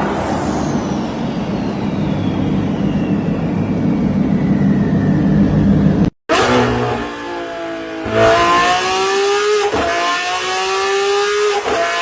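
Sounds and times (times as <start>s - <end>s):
faint high whine: 0.0s - 6.1s
car engine and exhaust running: 0.3s - 12.0s.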